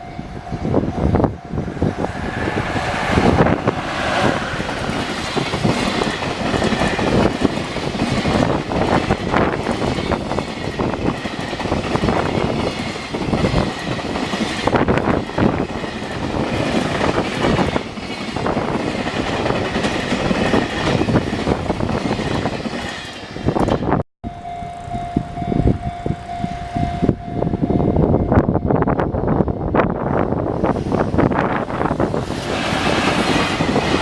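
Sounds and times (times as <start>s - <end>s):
crossing warning tone: 0.0s - 18.8s, 24.2s - 30.5s
train wheels rumbling on rails: 0.0s - 34.0s.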